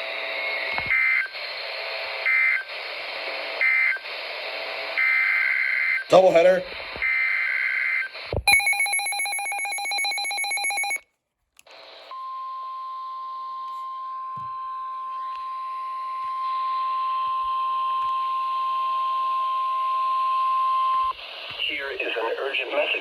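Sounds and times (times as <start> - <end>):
steady alarm tone: 8.5 - 11.0.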